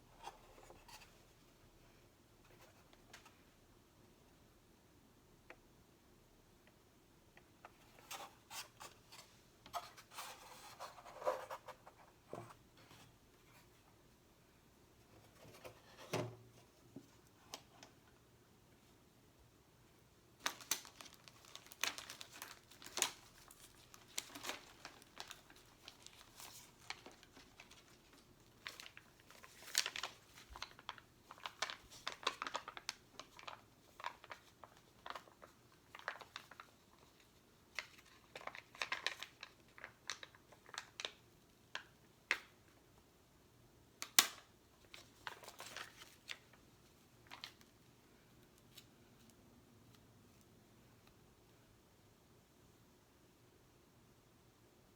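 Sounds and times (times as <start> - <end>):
stickers crinkling and peeling: 20.4 - 37.2.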